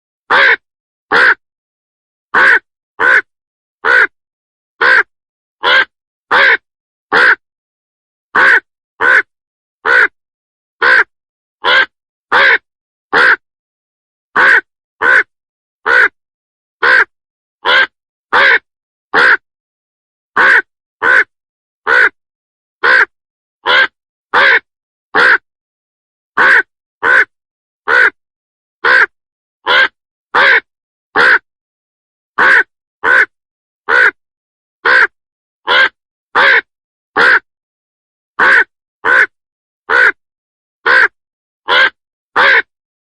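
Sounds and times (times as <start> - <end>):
crow cawing: 0.3 - 1.4, 2.4 - 4.1, 4.8 - 7.4, 8.4 - 10.1, 10.8 - 12.6, 13.2 - 13.4, 14.4 - 16.2, 16.8 - 18.6, 19.2 - 19.4, 20.4 - 21.3, 21.9 - 22.2, 22.8 - 25.4, 26.4 - 27.3, 27.9 - 28.2, 28.8 - 29.1, 29.7 - 31.4, 32.4 - 33.3, 33.9 - 34.2, 34.8 - 35.1, 35.7 - 37.4, 38.4 - 39.3, 39.9 - 40.2, 40.8 - 42.7.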